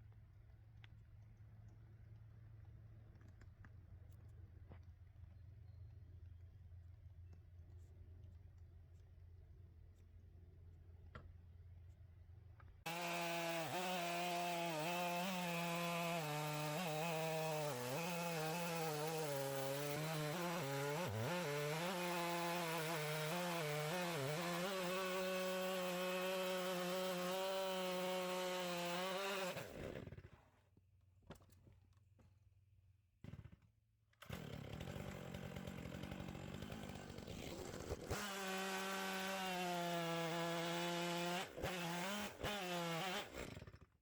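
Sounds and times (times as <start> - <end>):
chainsaw cutting through log: 12.9 - 30.4, 34.2 - 44.0.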